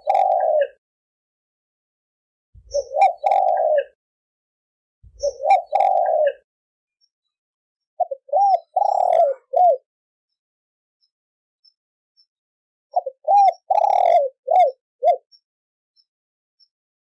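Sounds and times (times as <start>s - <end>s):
dove cooing: 0.0s - 0.8s, 2.6s - 4.0s, 5.1s - 6.4s, 8.0s - 9.9s, 12.9s - 15.4s.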